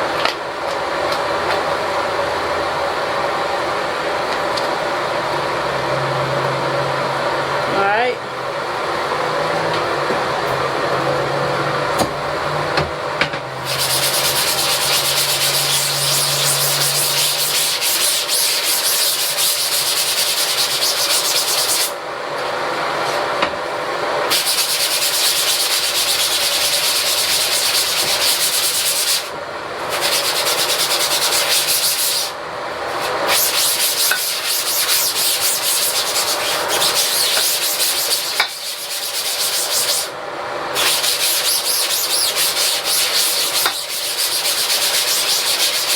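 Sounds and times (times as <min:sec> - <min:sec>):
steady hum: 0:00.0 - 0:45.9
scrub brush scrubbing: 0:13.6 - 0:22.0, 0:24.3 - 0:40.1, 0:40.8 - 0:45.9.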